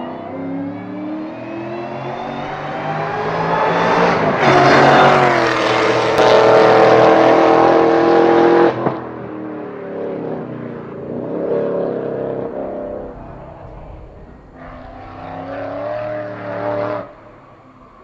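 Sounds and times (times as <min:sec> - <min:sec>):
car engine revving: 0:00.0 - 0:18.0.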